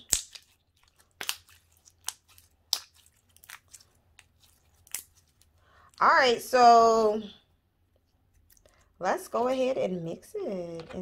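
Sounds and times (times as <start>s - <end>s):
slime popping and clicking: 0.0s - 0.5s, 1.2s - 3.7s.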